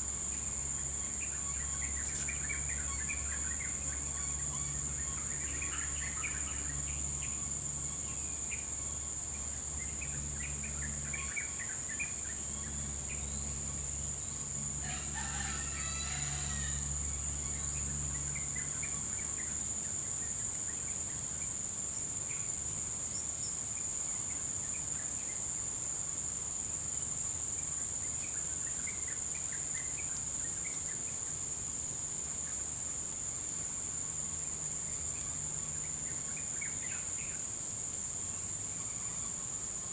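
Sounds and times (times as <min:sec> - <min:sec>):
high-pitched insect drone: 0:00.0 - 0:39.9
rooster crowing: 0:14.8 - 0:17.0.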